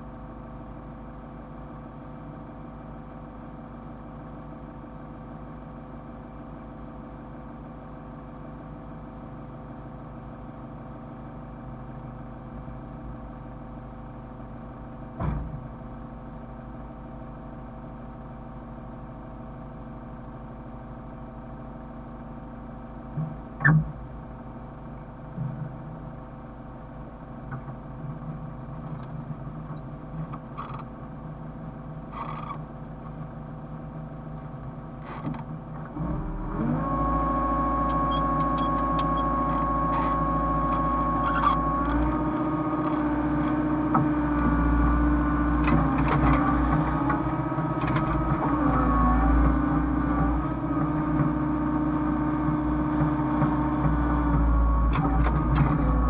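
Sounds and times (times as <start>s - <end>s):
sharp clunks: 15.2s - 15.6s
diesel engine idling: 35.6s - 46.0s
engine revving with whine: 35.8s - 56.0s.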